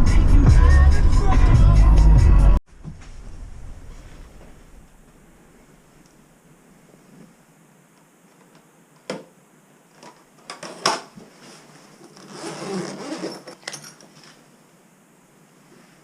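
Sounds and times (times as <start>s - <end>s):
scraping or rustling: 10.5s - 14.5s.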